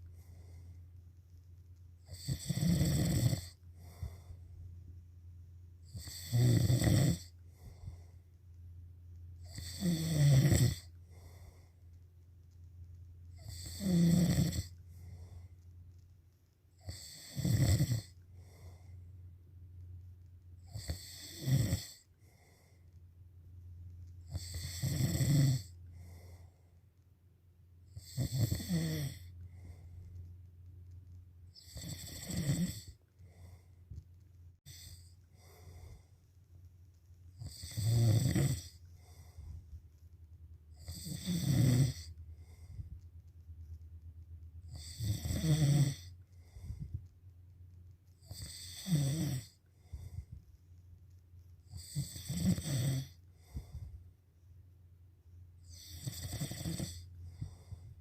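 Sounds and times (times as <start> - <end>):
quiet breathing: 0.0 - 43.8, 44.6 - 58.0
person snoring loudly: 2.1 - 4.0, 5.9 - 7.3, 9.5 - 10.9, 13.4 - 14.7, 16.8 - 18.1, 20.7 - 22.0, 24.3 - 25.7, 28.0 - 29.3, 31.6 - 32.9, 37.4 - 38.8, 40.8 - 42.1, 44.7 - 46.1, 48.3 - 49.6, 51.8 - 53.2, 55.6 - 57.1.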